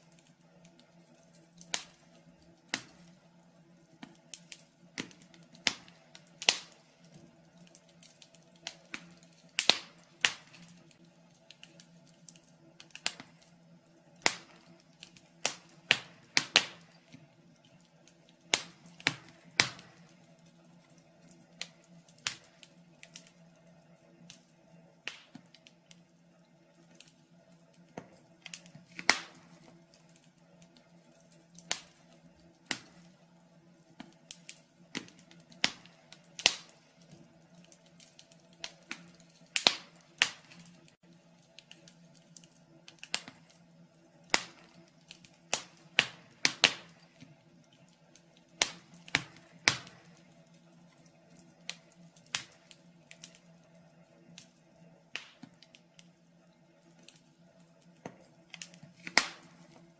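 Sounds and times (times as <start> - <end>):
faint steady hum: 0.0 - 59.9
wood fire crackling and popping: 0.0 - 59.9.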